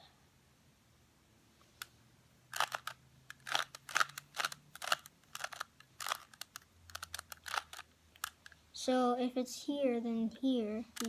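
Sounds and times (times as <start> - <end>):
puzzle cube clicking as twisted: 2.5 - 8.6.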